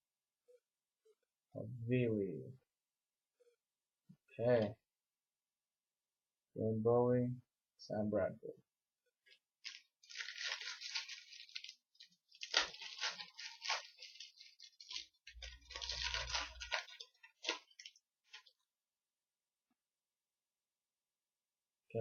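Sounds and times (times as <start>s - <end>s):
foil wrapper crinkling: 9.3s - 18.7s.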